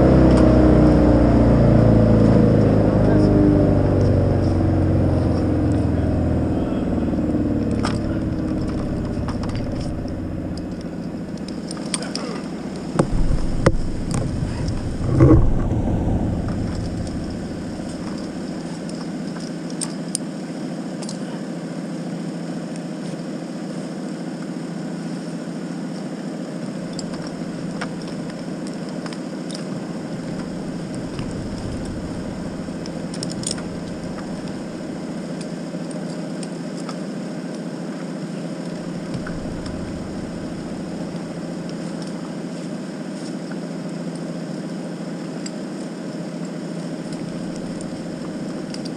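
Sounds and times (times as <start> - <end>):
engine running steadily: 0.0 - 48.9
engine knock: 5.2 - 19.0, 30.0 - 35.3, 38.7 - 41.9.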